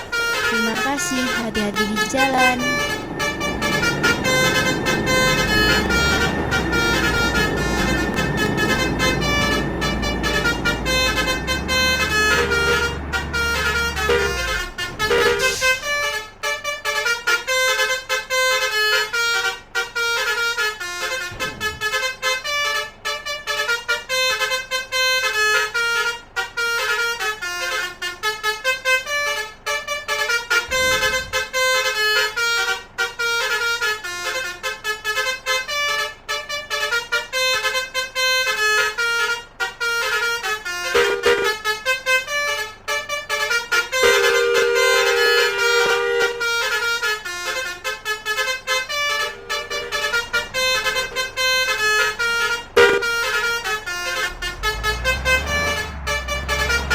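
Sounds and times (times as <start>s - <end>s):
multi-trumpet horn melody: 0.0s - 56.9s
low falling sweep: 1.5s - 14.6s.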